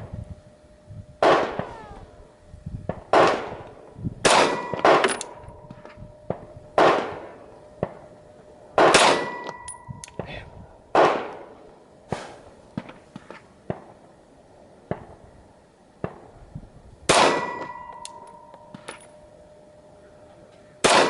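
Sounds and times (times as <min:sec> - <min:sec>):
faint steady ringing tone: 0:00.0 - 0:12.7, 0:13.4 - 0:21.0
pistol shots: 0:03.1 - 0:03.5, 0:04.2 - 0:05.3, 0:06.3 - 0:08.0, 0:08.8 - 0:09.6, 0:10.9 - 0:11.4, 0:17.1 - 0:18.1.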